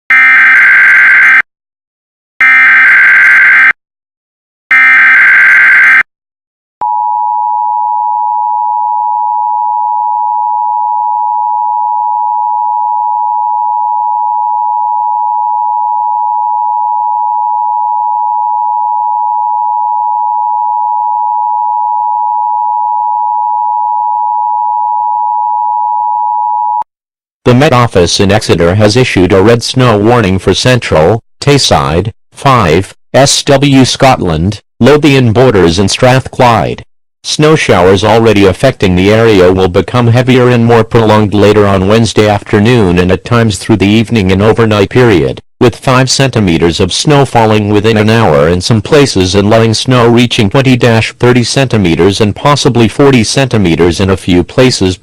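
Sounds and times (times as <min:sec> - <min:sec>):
two-tone attention signal: 0:04.7 - 0:06.0.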